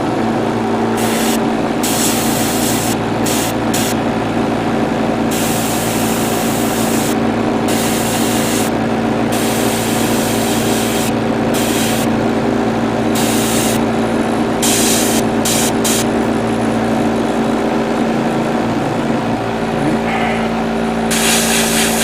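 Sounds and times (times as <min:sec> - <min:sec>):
steady hum: 0:00.0 - 0:22.0
airbrush spraying hiss: 0:01.0 - 0:04.0, 0:14.6 - 0:16.1, 0:21.1 - 0:22.0.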